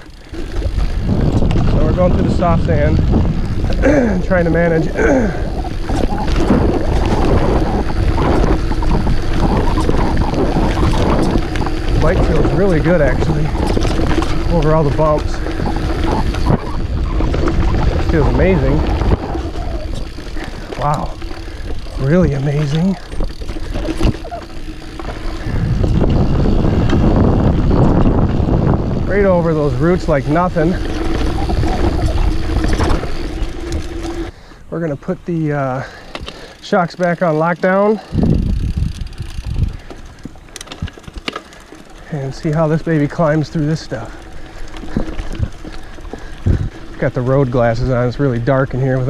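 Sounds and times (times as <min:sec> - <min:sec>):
bike rattles and knocks: 0:00.0 - 0:34.4, 0:35.0 - 0:49.0
wind rumbling on microphone: 0:00.0 - 0:34.4, 0:38.0 - 0:49.0
bike rolling through sand: 0:00.0 - 0:49.0.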